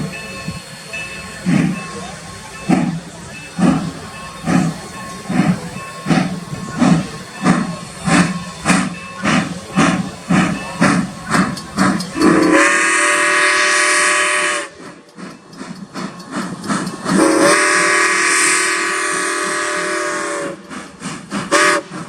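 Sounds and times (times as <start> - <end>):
steam locomotive chuffing: 0.0 - 22.0
steam whistle blasts: 12.2 - 14.8, 17.1 - 20.7, 21.5 - 22.0.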